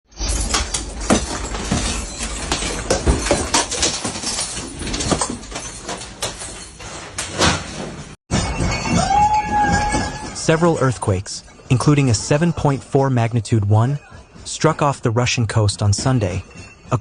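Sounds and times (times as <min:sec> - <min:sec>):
household objects rattling and knocking: 0:00.1 - 0:17.0.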